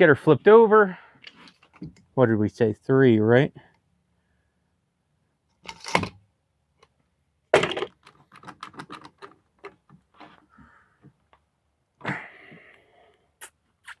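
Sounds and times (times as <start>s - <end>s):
light wooden clicks and knocks: 6.8s - 11.5s.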